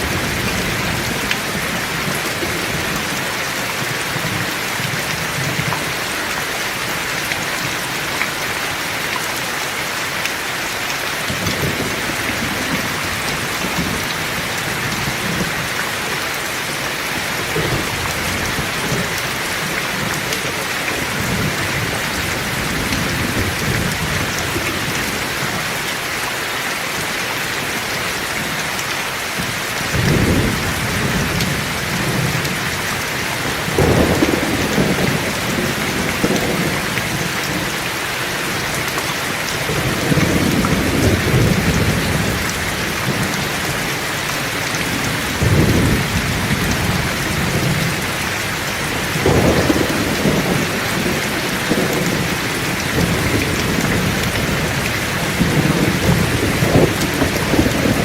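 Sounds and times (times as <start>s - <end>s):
heavy rain pouring: 0.0s - 58.0s
thunder rumbling: 29.9s - 37.7s, 39.5s - 44.0s, 44.8s - 58.0s.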